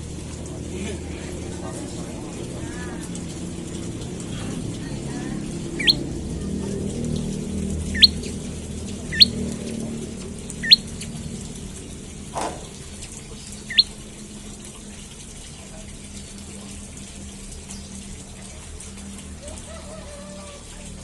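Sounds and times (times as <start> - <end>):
bird chirping: 5.7 - 6.0, 7.9 - 8.4, 9.1 - 9.4, 10.6 - 10.9, 13.4 - 13.9.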